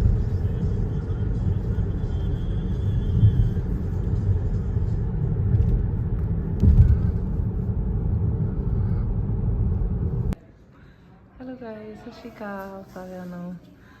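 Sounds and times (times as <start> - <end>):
low rumbling noise: 0.0 - 10.4.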